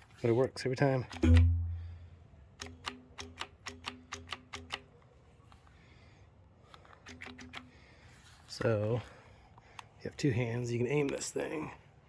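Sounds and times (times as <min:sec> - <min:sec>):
solenoid valve clicking: 0:01.1 - 0:02.0.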